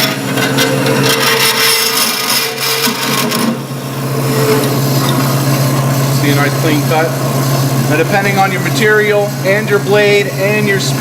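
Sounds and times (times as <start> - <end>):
bandsaw blade cutting tube: 0.0 - 8.4
bandsaw motor hum: 0.0 - 11.0.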